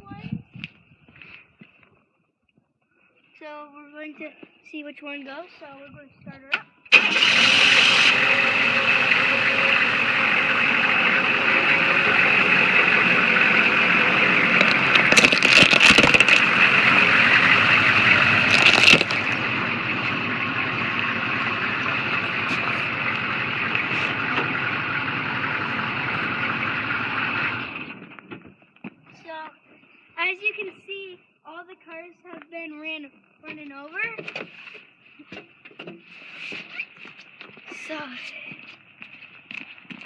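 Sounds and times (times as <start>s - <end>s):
toy cars crunching under wheels: 11.5s - 17.3s, 17.9s - 19.4s.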